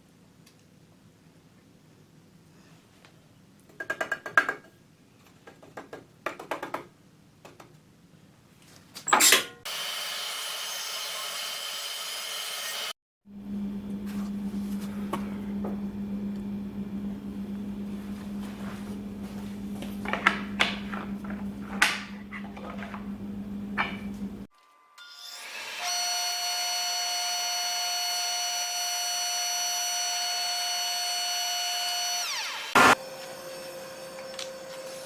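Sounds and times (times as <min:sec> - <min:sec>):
workshop knocks and clatter: 0:19.7 - 0:24.3
power tool motor humming: 0:26.7 - 0:35.0.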